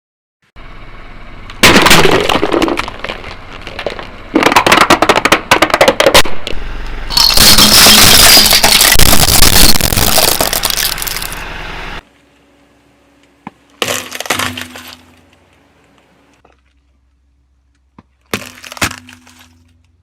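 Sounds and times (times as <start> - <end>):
brittle objects cracking and crunching: 7.1 - 11.4.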